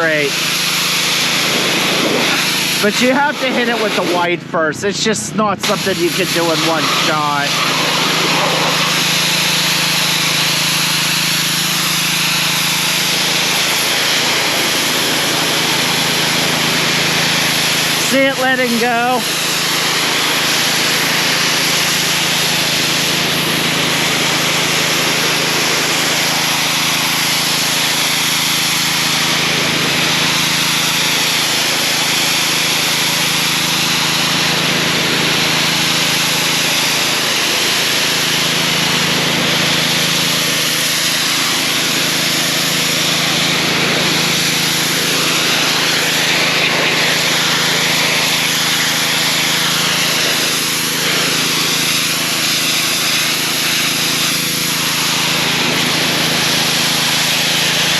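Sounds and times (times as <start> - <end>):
pressure washer engine humming: 0.0 - 57.9
nozzle spraying water hiss: 5.6 - 16.6.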